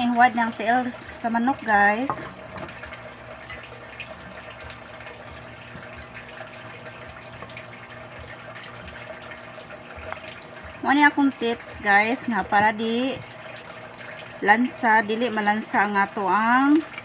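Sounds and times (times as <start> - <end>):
running water rushing: 0.0 - 17.0.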